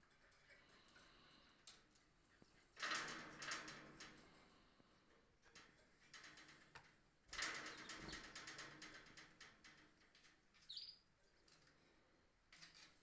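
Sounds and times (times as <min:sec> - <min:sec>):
bird chirp: 0:10.6 - 0:11.0.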